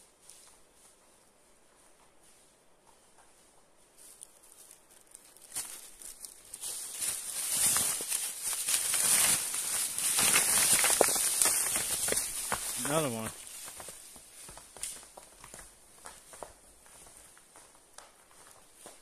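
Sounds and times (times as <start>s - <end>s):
footsteps crunching on loose rock: 4.0s - 19.0s.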